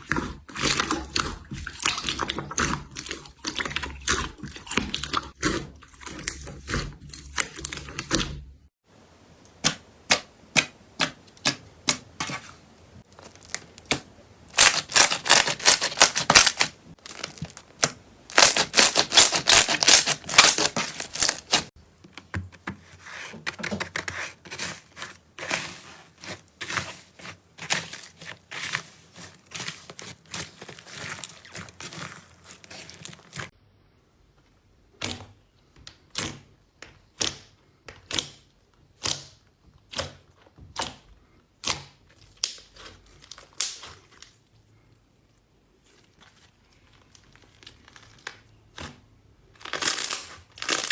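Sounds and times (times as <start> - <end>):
slime clicking and crackling: 13.1 - 21.7, 41.6 - 44.4.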